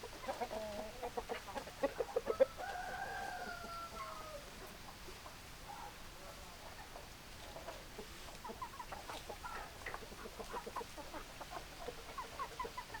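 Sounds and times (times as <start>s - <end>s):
chickens clucking: 0.0s - 13.0s.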